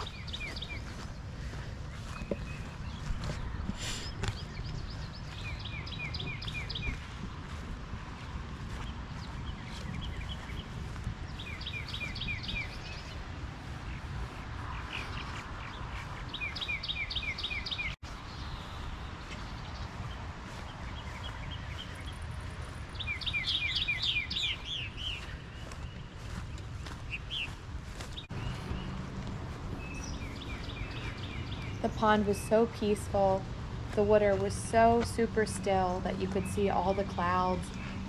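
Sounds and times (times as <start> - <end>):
songbird singing: 0.0 - 38.0
low outdoor rumble: 27.6 - 38.0.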